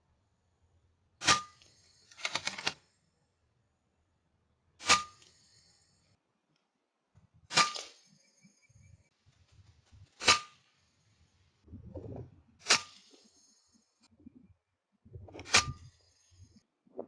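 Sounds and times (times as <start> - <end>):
air rifle shots: 4.8 - 5.3, 7.5 - 8.0, 10.2 - 10.6.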